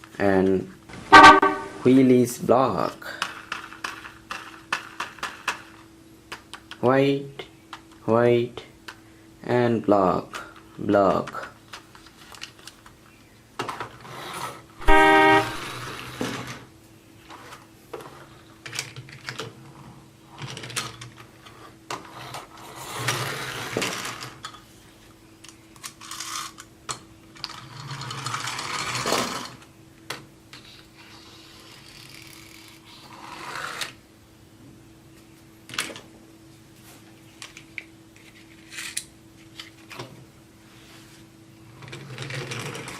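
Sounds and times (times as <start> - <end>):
short horn-like beep: 1.1 - 1.9, 14.8 - 16.0
toy car rolling: 3.1 - 5.8, 20.4 - 24.6, 25.8 - 26.7, 27.4 - 29.6, 31.0 - 34.0, 41.8 - 42.9
toy car clicks and knocks: 3.2 - 6.8.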